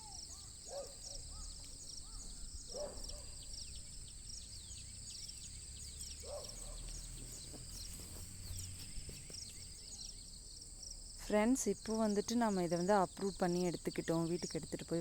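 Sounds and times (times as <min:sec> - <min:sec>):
bird calls: 0:00.0 - 0:10.6
insects chirping: 0:00.0 - 0:15.0.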